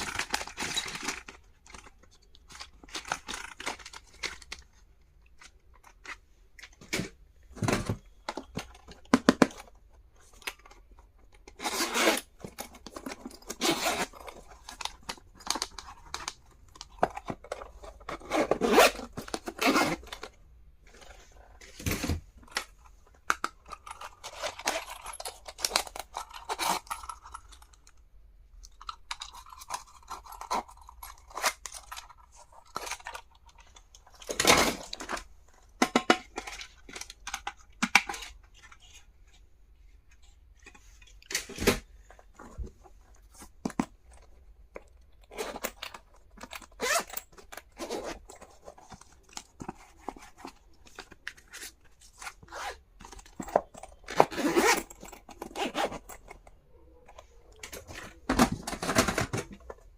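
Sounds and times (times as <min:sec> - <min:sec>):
packaging rustling and tearing: 0:00.0 - 0:06.2.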